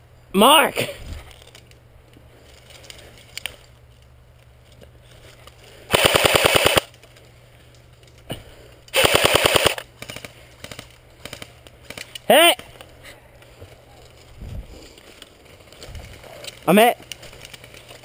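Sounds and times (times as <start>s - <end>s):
airsoft gun full-auto bursts: 5.9s - 6.9s, 8.9s - 12.1s.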